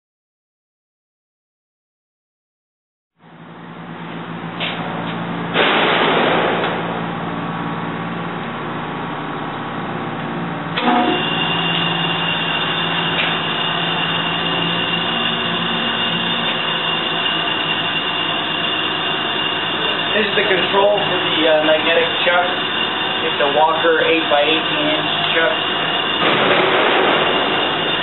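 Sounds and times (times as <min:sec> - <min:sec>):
steady high whine: 0:03.2 - 0:28.0
surface grinder motor hum: 0:06.7 - 0:28.0.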